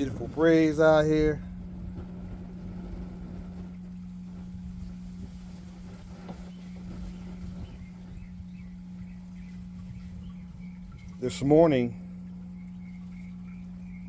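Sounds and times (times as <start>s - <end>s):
steady low hum: 0.0s - 14.0s
wind buffeting microphone: 0.0s - 14.0s
faint bird chirps: 6.4s - 11.5s, 12.3s - 14.0s.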